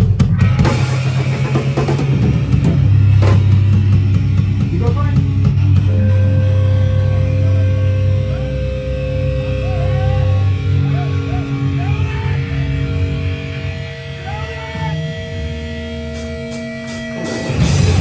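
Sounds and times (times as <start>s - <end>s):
distorted electric guitars and bass: 0.0s - 18.0s
guitar feedback squeals: 5.5s - 18.0s.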